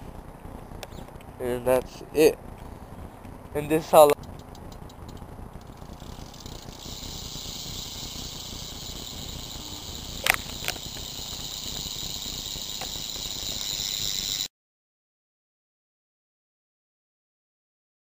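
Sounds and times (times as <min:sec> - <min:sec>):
bike wheel spinning buzz: 0:04.2 - 0:14.5
sharp clicks: 0:10.1 - 0:11.7.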